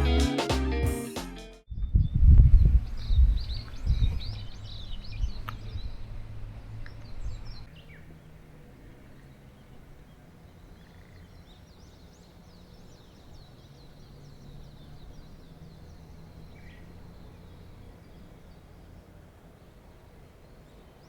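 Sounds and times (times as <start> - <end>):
high chirping birdsong: 1.7 - 8.2, 9.0 - 19.2.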